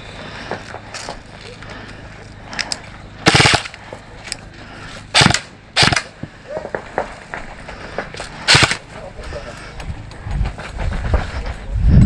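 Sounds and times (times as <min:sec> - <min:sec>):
airsoft gun bursts: 0:03.2 - 0:03.8, 0:05.1 - 0:06.2, 0:08.5 - 0:08.8.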